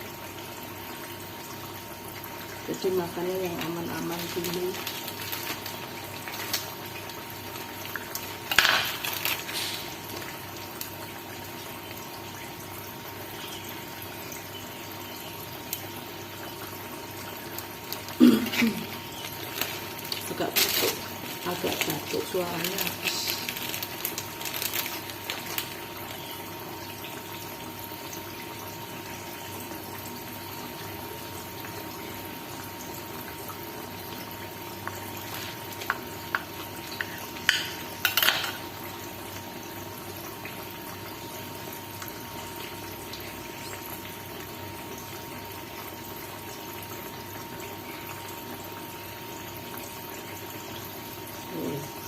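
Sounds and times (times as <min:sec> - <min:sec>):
food sizzling in a pan: 0:02.6 - 0:11.6, 0:13.1 - 0:29.1, 0:29.7 - 0:43.2
utensils clinking: 0:37.0 - 0:38.6.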